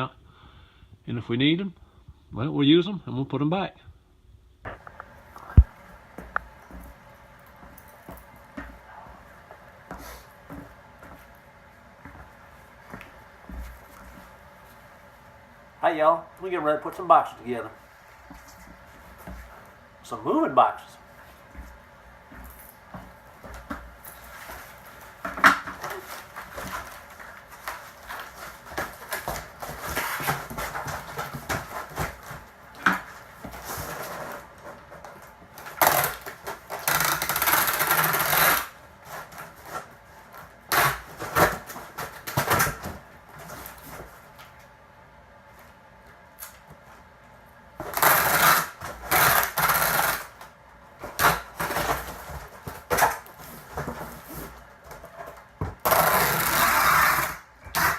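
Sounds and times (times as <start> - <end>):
cardboard rasping: 25.4 - 35.0, 35.7 - 39.9, 47.8 - 50.4, 55.8 - 57.9.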